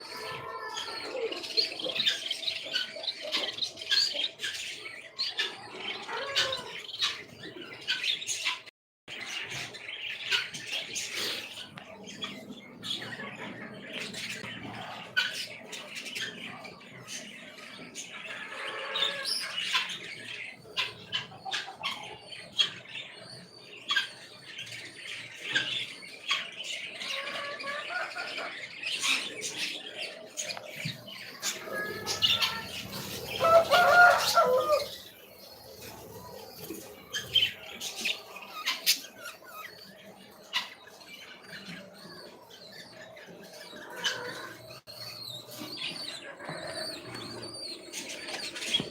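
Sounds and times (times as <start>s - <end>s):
pet birds chirping and squawking: 0.0s - 48.9s
harsh bird call: 31.4s - 35.0s.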